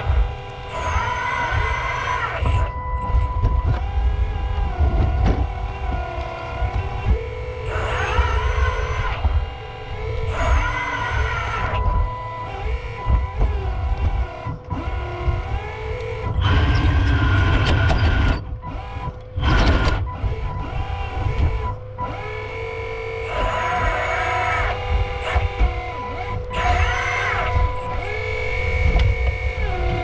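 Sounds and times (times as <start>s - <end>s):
hydraulic pump whining: 0.0s - 30.0s
machine tones shifting in pitch: 0.0s - 30.0s.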